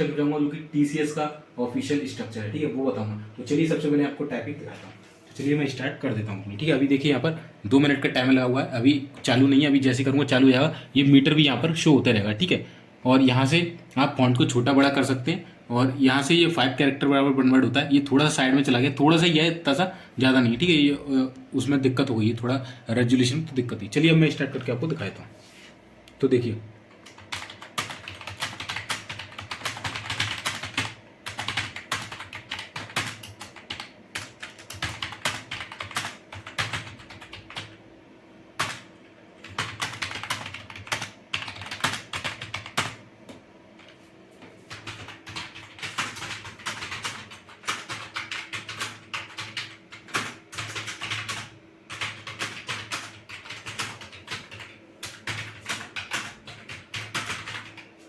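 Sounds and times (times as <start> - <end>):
faint steady hum: 0.0 - 58.0
fast typing on keyboard: 27.0 - 37.8, 38.6 - 43.0, 44.7 - 57.9.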